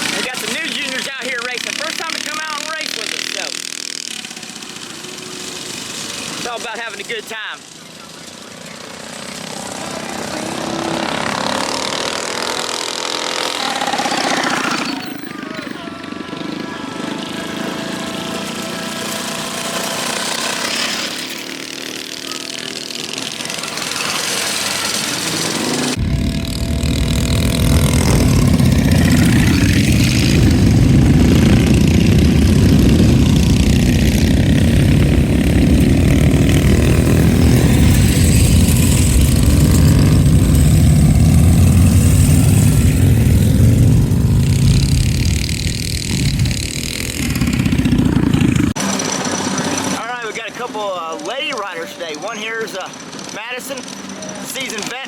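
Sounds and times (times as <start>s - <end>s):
mini bike engines running: 0.0s - 55.0s
loud deep engine rumble: 24.9s - 50.2s.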